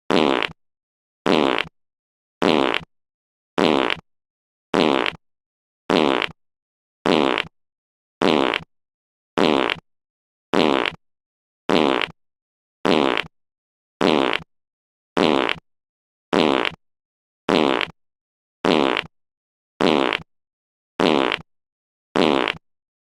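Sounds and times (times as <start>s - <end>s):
recorded fart sound: 0.1s - 0.6s, 1.2s - 1.7s, 2.4s - 2.9s, 3.6s - 4.0s, 4.7s - 5.2s, 5.9s - 6.4s, 7.0s - 7.5s, 8.2s - 8.7s, 9.4s - 9.8s, 10.5s - 11.0s, 11.7s - 12.2s, 12.8s - 13.3s, 14.0s - 14.5s, 15.2s - 15.6s, 16.3s - 16.8s, 17.5s - 18.0s, 18.6s - 19.1s, 19.8s - 20.3s, 21.0s - 21.5s, 22.2s - 22.6s.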